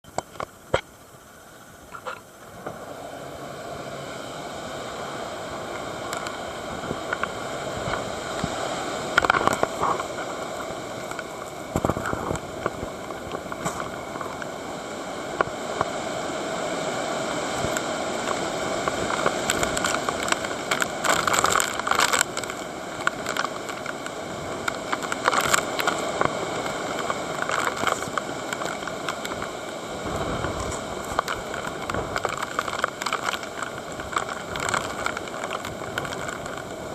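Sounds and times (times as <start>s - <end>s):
strong wind buffeting microphone: 5.1s - 36.9s
crackling hits: 5.7s - 14.7s, 17.5s - 36.9s.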